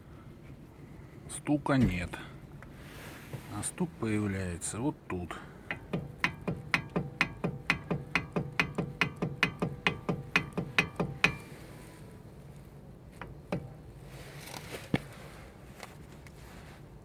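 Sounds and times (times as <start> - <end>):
brake caliper metallic knocking: 5.6 - 11.6, 13.1 - 13.9.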